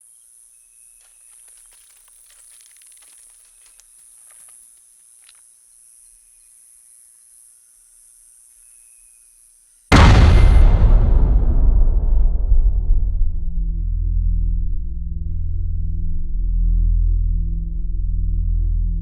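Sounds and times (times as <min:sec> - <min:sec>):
crackling and rustling leaves: 0:01.0 - 0:06.2.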